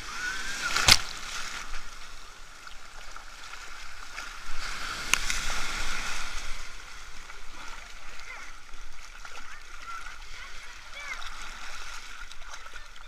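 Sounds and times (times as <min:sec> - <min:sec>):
sharp water slaps: 0:00.0 - 0:01.8, 0:04.5 - 0:06.1
sea waves washing at shore: 0:00.0 - 0:13.0.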